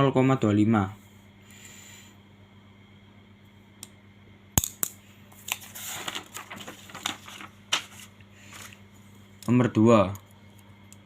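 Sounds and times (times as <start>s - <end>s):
objects rustling and scraping: 5.3s - 9.1s.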